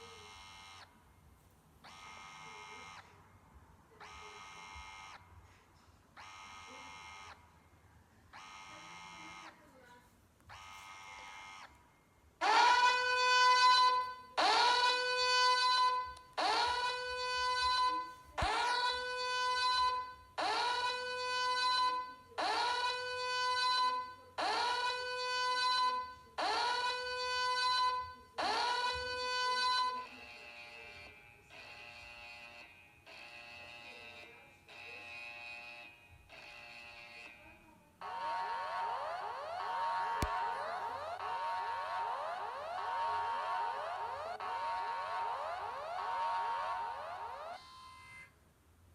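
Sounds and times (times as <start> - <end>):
electric siren buzzing blasts: 12.4 - 27.8, 38.0 - 48.2.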